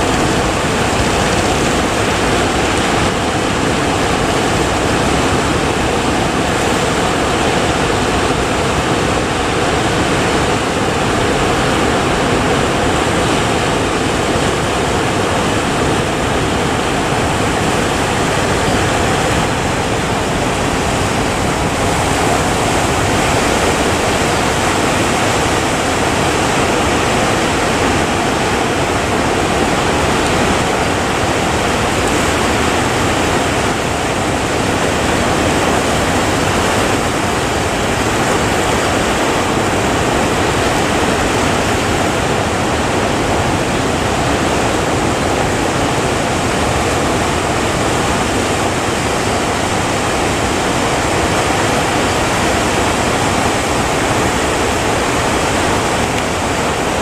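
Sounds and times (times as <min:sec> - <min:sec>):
rough sea water roaring: 0:00.0 - 0:57.0
wind: 0:00.0 - 0:57.0.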